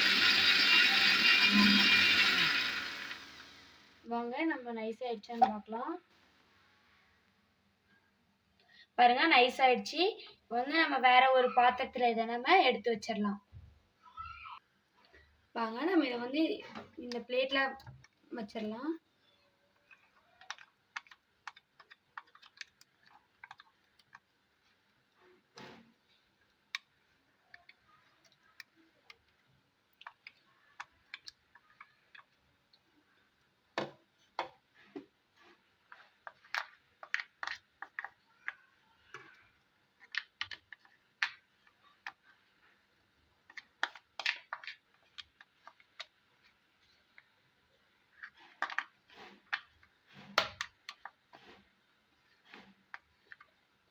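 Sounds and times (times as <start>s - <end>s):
spoon scraping grinder jar: 0.0s - 3.3s.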